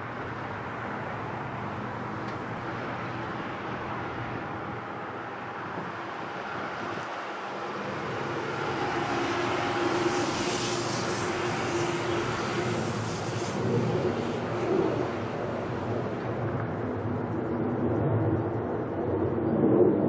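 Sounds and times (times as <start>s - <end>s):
jet engine whine: 0.0s - 20.0s
jet engines rushing: 0.0s - 20.0s.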